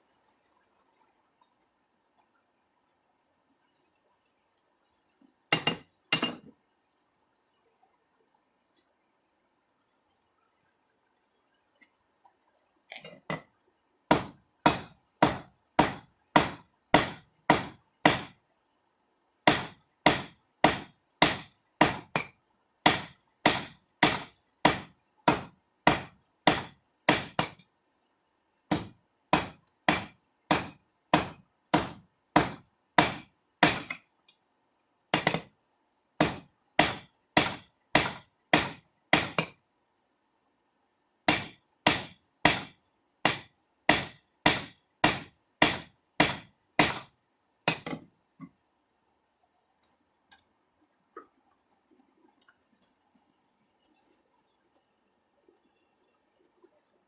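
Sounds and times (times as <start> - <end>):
hammer striking steel on anvil: 5.6 - 6.4, 14.1 - 18.3, 19.5 - 22.3, 22.9 - 27.6, 28.7 - 34.0, 35.2 - 35.5, 36.2 - 39.6, 41.3 - 47.1, 47.7 - 48.0.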